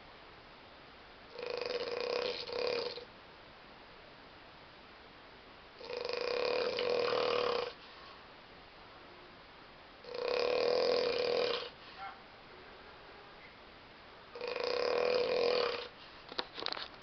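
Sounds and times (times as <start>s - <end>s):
person snoring: 1.3s - 3.0s, 5.8s - 7.8s, 10.0s - 11.8s, 14.3s - 15.9s.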